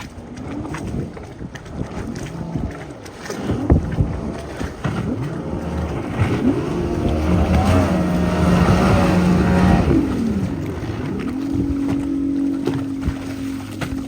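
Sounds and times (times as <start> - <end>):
motorboat engine revving: 0.0 - 14.0.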